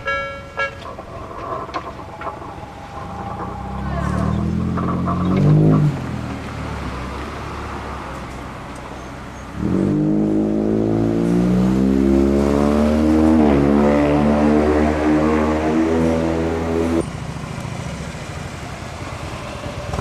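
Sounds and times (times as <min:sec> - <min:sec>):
electric train motors whining: 0:00.3 - 0:05.5.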